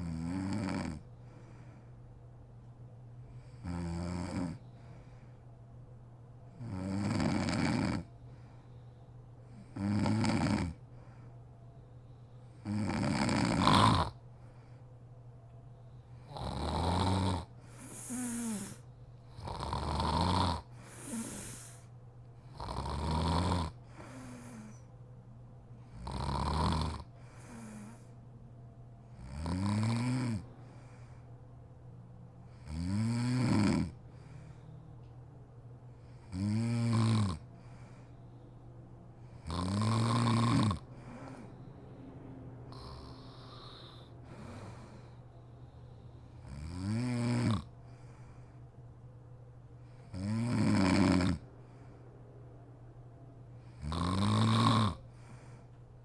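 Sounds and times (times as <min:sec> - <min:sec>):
woman snoring: 0:00.0 - 0:01.0, 0:03.5 - 0:04.6, 0:06.6 - 0:08.1, 0:09.7 - 0:10.8, 0:12.6 - 0:14.2, 0:16.2 - 0:18.8, 0:19.4 - 0:21.8, 0:22.5 - 0:24.8, 0:26.0 - 0:28.1, 0:29.2 - 0:30.4, 0:32.6 - 0:34.0, 0:36.3 - 0:37.5, 0:39.3 - 0:41.6, 0:42.7 - 0:45.2, 0:46.4 - 0:47.7, 0:50.1 - 0:51.4, 0:53.7 - 0:55.1
soft breath: 0:01.0 - 0:02.5, 0:04.5 - 0:06.5, 0:08.1 - 0:09.8, 0:10.8 - 0:12.6, 0:14.2 - 0:16.4, 0:17.5 - 0:19.4, 0:20.6 - 0:22.6, 0:23.8 - 0:26.0, 0:27.0 - 0:29.1, 0:30.4 - 0:32.7, 0:34.0 - 0:36.3, 0:37.4 - 0:39.5, 0:40.3 - 0:46.6, 0:47.6 - 0:50.2, 0:51.4 - 0:53.9, 0:55.0 - 0:56.0.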